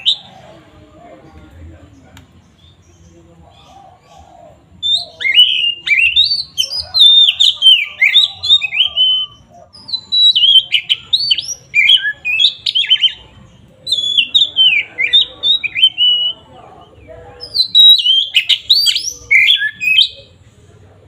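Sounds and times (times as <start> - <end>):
bird singing whistled phrases: 4.8 - 13.2, 13.8 - 16.4, 17.5 - 20.3.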